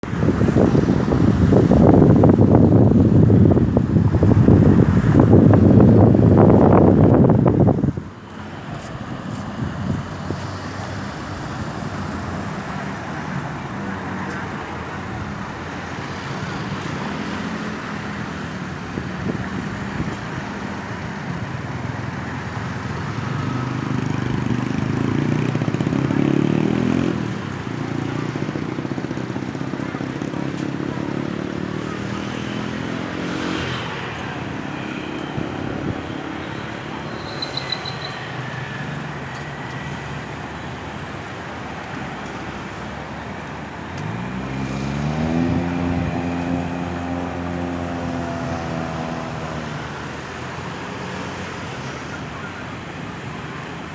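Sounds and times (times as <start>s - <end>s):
passing cars and motorcycles: 0.0s - 53.9s
vehicle accelerating past: 23.7s - 27.3s, 44.0s - 50.0s.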